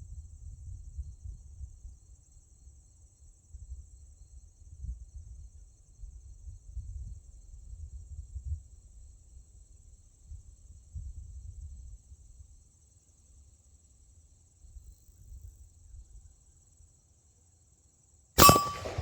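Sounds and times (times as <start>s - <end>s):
rifle shot with echo: 18.4s - 19.0s.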